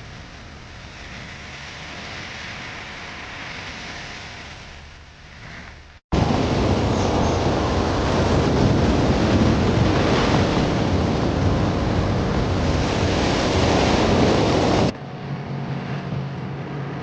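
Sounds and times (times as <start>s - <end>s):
beach noise: 0.0s - 17.0s
surf: 0.0s - 17.0s
wind buffeting microphone: 0.0s - 17.0s.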